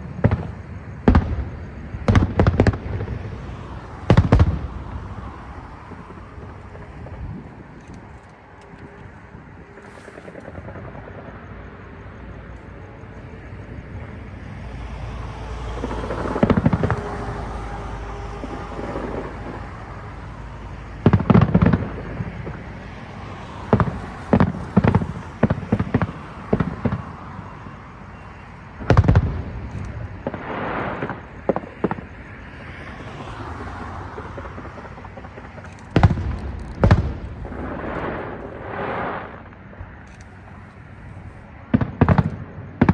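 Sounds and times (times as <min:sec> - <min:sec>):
firework shells bursting: 0:23.6 - 0:27.5, 0:33.8 - 0:42.9.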